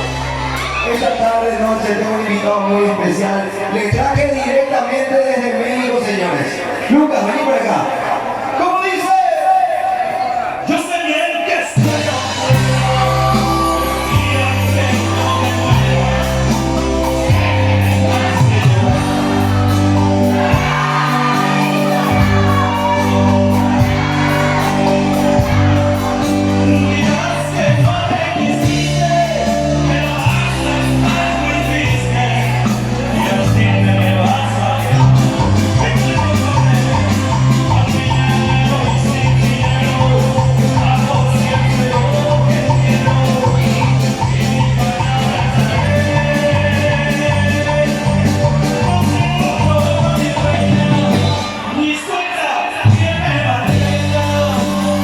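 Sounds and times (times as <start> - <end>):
live cumbia band playing: 0.0 - 7.3, 10.0 - 55.0
crowd shouting and whooping: 0.0 - 55.0
person singing: 11.8 - 55.0.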